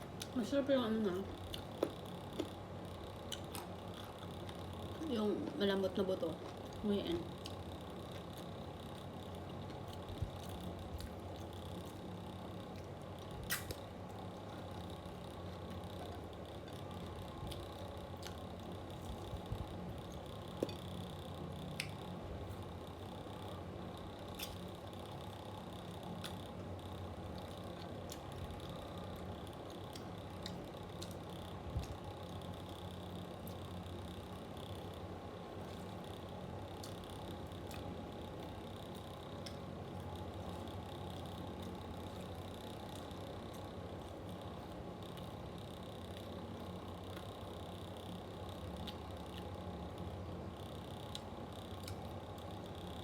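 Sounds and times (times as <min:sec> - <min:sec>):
electric fan humming: 0:00.0 - 0:53.0
eating clicks: 0:06.4 - 0:22.2.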